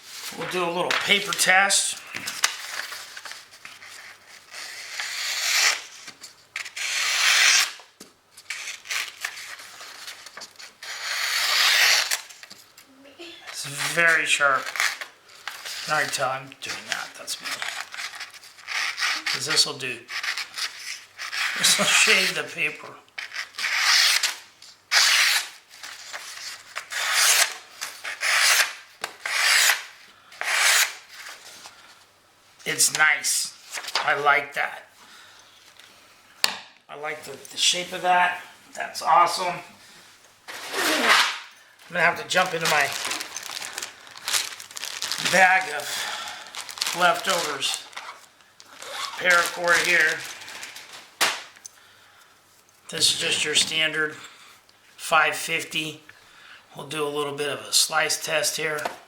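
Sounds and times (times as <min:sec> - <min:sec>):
knife slicing paper: 0:02.4 - 0:07.8, 0:08.5 - 0:12.4, 0:23.2 - 0:31.3, 0:40.5 - 0:41.5, 0:42.3 - 0:48.2, 0:48.8 - 0:51.4
paper rustling: 0:40.5 - 0:51.6.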